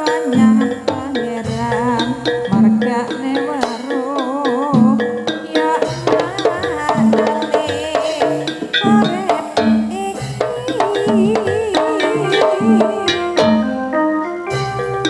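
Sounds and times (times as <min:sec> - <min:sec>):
steady drum beat: 0:00.0 - 0:15.0
wavering vibrato melody: 0:10.6 - 0:15.0.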